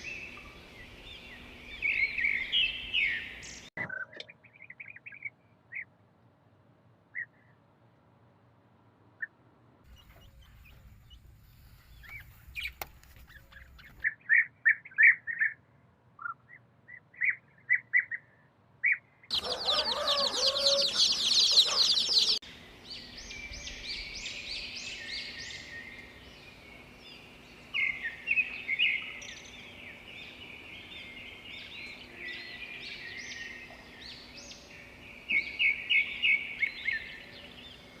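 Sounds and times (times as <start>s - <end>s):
small birds chirping: 0.0s - 6.0s, 9.2s - 38.0s
loud dense bird chattering: 19.3s - 22.4s.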